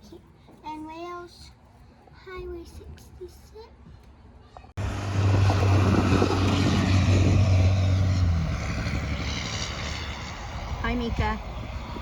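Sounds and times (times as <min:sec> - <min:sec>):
loud engine drone: 0:04.8 - 0:12.0
low hum: 0:04.8 - 0:12.0.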